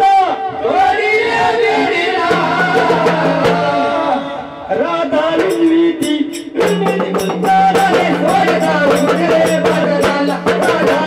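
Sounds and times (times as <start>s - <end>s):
voices singing folk song: 0.5s - 11.0s
percussion strokes: 2.3s - 4.2s, 5.4s - 11.0s.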